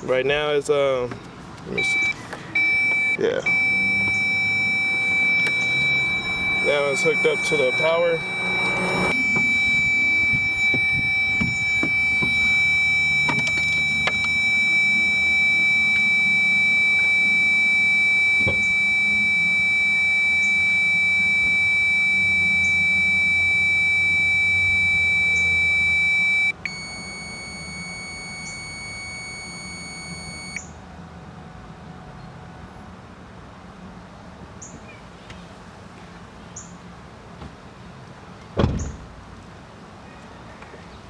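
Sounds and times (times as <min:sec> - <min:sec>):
circuit tester buzzer tone: 0:01.8 - 0:30.7.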